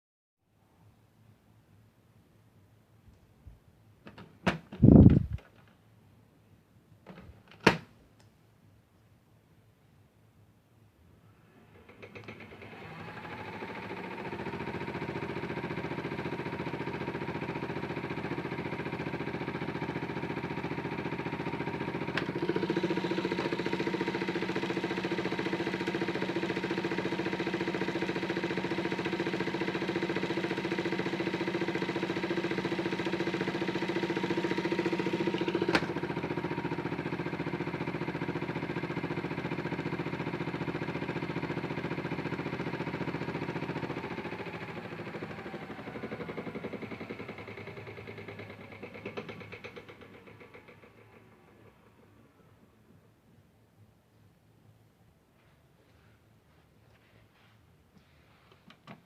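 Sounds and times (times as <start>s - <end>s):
washing machine motor hum: 11.5s - 53.0s.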